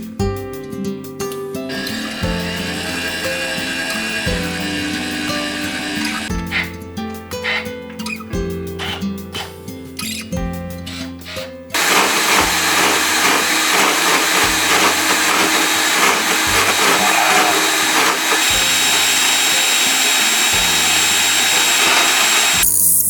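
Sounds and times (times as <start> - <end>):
background music: 0.0 - 22.6
power tool running: 1.7 - 6.8, 7.4 - 7.6, 10.9 - 23.0.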